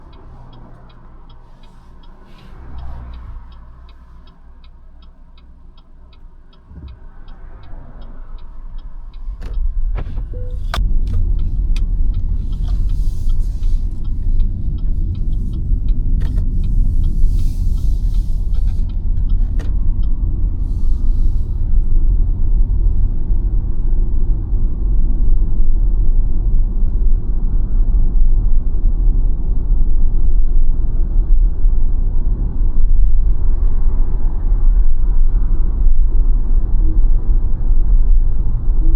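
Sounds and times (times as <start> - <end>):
road and tyre rumble: 0.0 - 38.9
fast regular ticking: 10.8 - 20.6.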